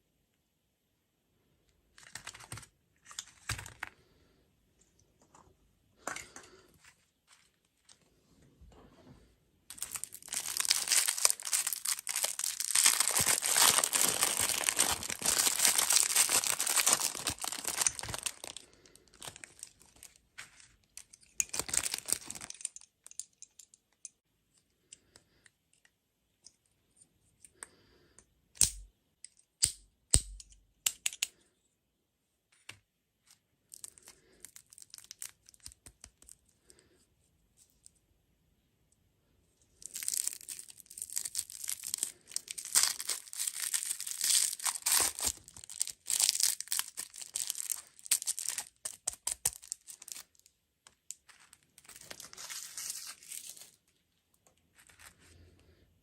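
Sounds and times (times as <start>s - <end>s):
plastic wrapper tearing and crinkling: 9.7s - 23.2s, 33.7s - 36.4s, 39.8s - 53.8s.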